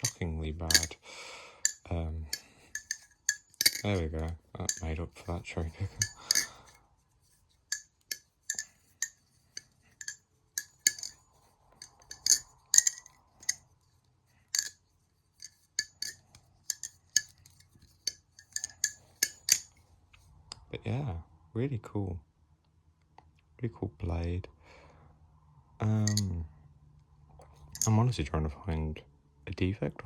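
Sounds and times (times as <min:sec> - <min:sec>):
butterfly knife clacking: 0:00.0 - 0:00.9, 0:01.6 - 0:04.9, 0:05.8 - 0:06.8, 0:07.7 - 0:11.2, 0:11.8 - 0:13.6.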